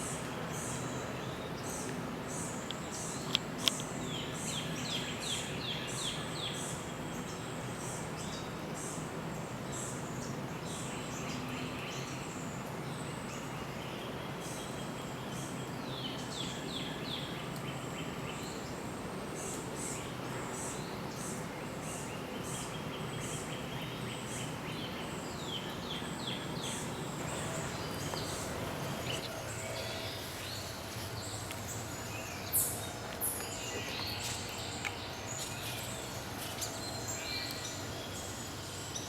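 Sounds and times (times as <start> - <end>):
birds singing down-slurred notes: 20.6 - 39.0.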